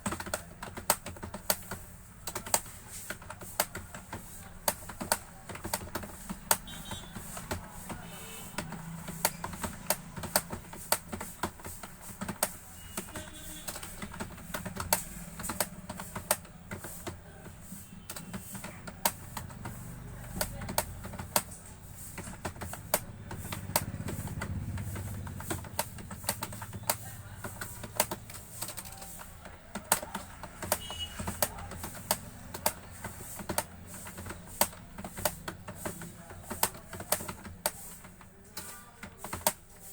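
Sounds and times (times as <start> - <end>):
keyboard typing: 0.0 - 39.9.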